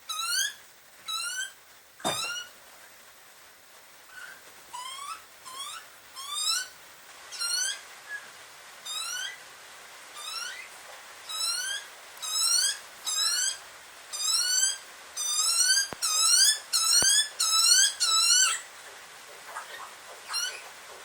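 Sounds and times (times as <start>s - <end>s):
bird squeaky whistled calls: 10.2s - 10.7s, 14.2s - 18.6s.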